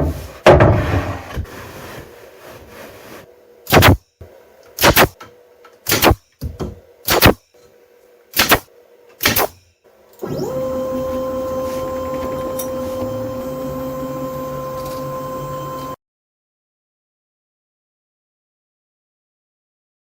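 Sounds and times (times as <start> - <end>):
router spindle whining: 10.2 - 16.0.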